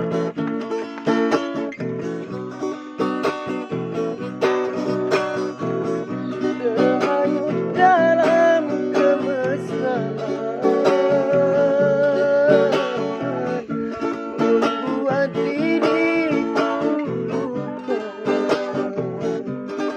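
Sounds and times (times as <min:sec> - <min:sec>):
plucked guitar chords: 0:00.0 - 0:19.9
person singing long notes: 0:04.7 - 0:19.9.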